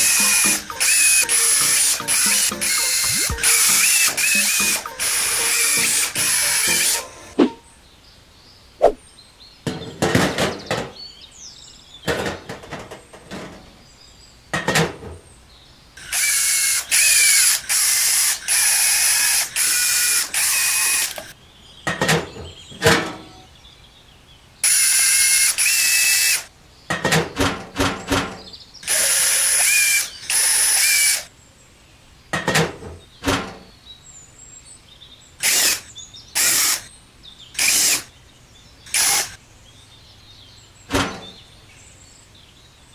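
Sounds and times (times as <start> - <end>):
electric drill whining: 0.0 - 7.4, 16.0 - 21.4, 24.6 - 26.5, 28.8 - 31.3, 35.4 - 36.9, 37.6 - 38.1, 38.9 - 39.4.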